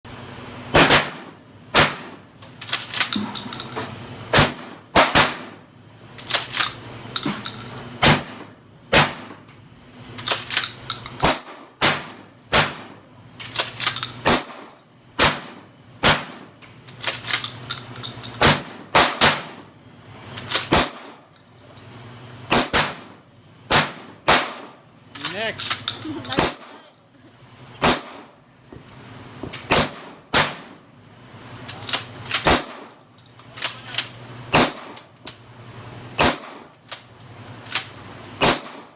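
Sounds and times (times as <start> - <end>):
shotgun shots: 0.7 - 2.2, 4.3 - 5.6, 8.0 - 9.4, 11.2 - 13.0, 14.2 - 16.5, 18.4 - 19.7, 20.6 - 21.2, 22.5 - 25.8, 26.4 - 26.8, 27.8 - 28.4, 29.7 - 30.8, 32.3 - 33.0, 34.5 - 35.0, 36.2 - 36.7, 38.4 - 38.9
shotgun pump racking: 2.4 - 3.9, 6.2 - 7.8, 10.2 - 11.3, 13.4 - 14.2, 16.8 - 18.7, 20.3 - 21.9, 25.1 - 26.5, 31.6 - 35.4, 36.7 - 38.0.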